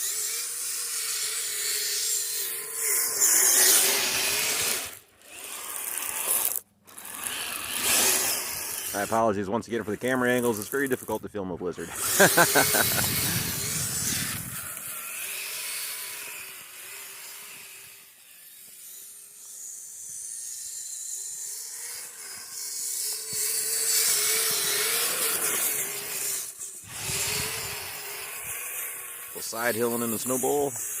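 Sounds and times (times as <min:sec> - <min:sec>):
electric motor whining: 0:00.0 - 0:11.0, 0:11.8 - 0:31.0.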